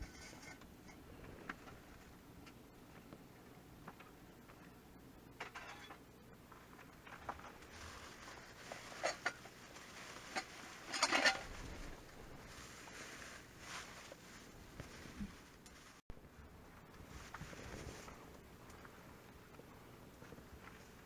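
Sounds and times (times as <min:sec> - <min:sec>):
quiet rustling: 0:06.5 - 0:21.0.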